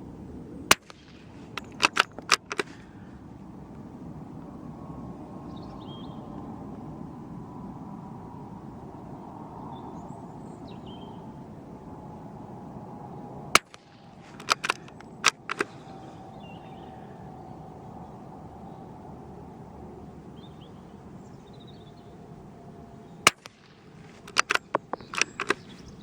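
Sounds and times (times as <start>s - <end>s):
rifle bolt clicks: 0.7s - 2.8s, 13.6s - 16.1s, 23.2s - 26.0s
rifle shot: 0.7s - 2.8s, 13.5s - 16.2s, 23.2s - 25.8s.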